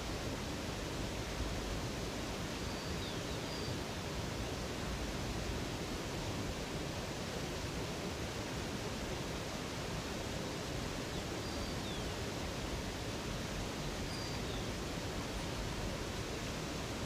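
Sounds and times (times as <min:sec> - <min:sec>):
water rushing in a cascade: 0:00.0 - 0:17.0
faint high bird chirps: 0:14.1 - 0:14.7.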